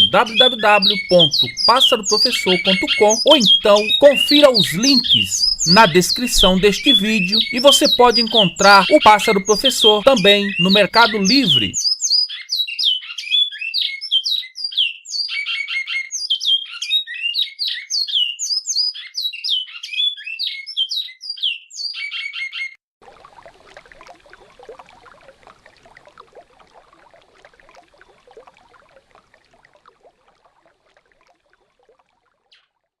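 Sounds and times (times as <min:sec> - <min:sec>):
running river water: 0:00.0 - 0:11.8, 0:23.0 - 0:32.9
bird singing whistled notes: 0:00.0 - 0:22.8
bird trills: 0:00.0 - 0:22.8.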